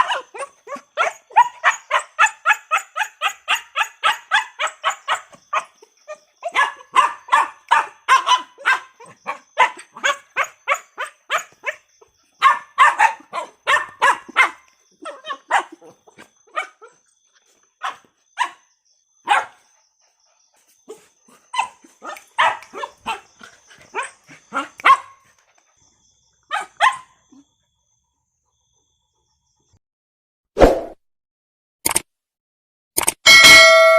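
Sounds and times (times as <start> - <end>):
dog barking: 0.0 - 17.0, 17.8 - 18.6, 19.2 - 19.7, 20.9 - 25.2, 26.5 - 27.4.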